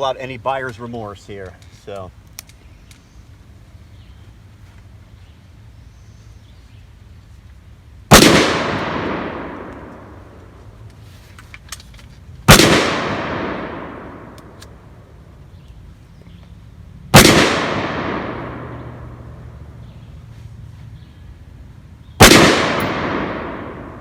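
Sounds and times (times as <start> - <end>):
pistol gunshots: 8.1 - 10.2, 12.5 - 14.6, 17.1 - 19.3, 22.2 - 24.0.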